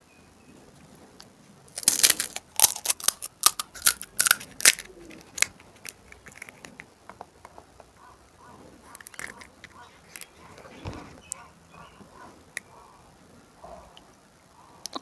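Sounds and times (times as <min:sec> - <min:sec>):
crisp shells cracking and crunching: 0:01.7 - 0:07.6, 0:08.9 - 0:10.4.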